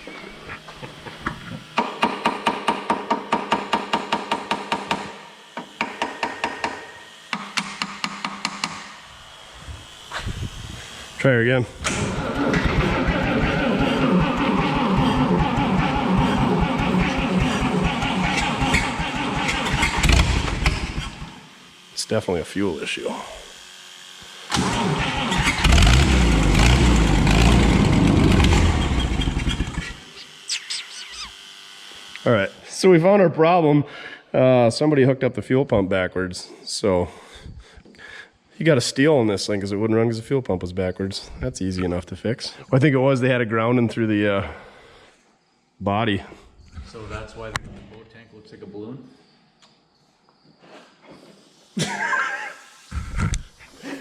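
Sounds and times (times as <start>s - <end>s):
tractor engine starting and stalling: 11.8s - 21.4s, 24.4s - 30.1s.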